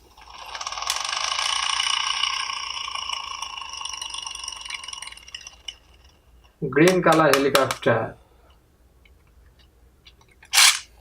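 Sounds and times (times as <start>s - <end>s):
toy helicopter rotor whirring: 0.0s - 6.5s, 10.5s - 10.9s.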